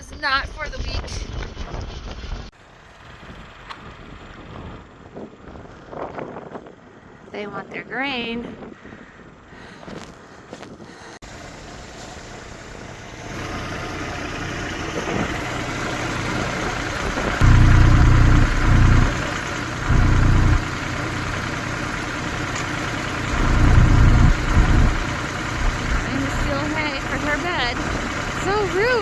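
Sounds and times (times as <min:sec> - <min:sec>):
low engine surges: 0:11.2 - 0:29.0
vehicle engine running: 0:11.2 - 0:29.0.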